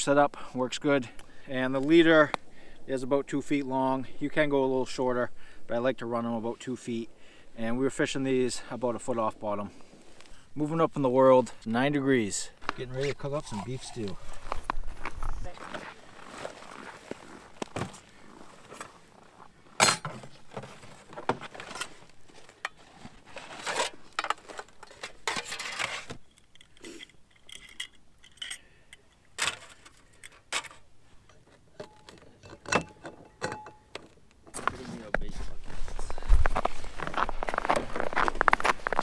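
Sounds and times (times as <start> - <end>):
pot and utensils clinking: 31.8 - 33.9.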